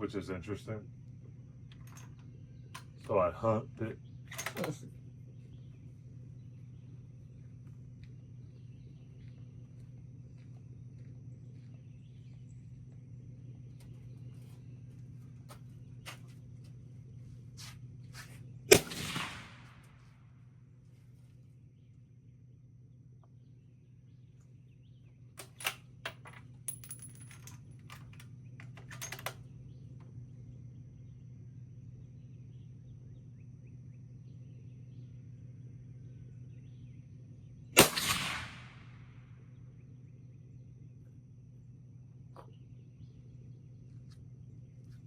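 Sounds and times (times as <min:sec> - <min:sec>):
suppressed rifle shot: 0:18.7 - 0:20.1, 0:37.8 - 0:39.2.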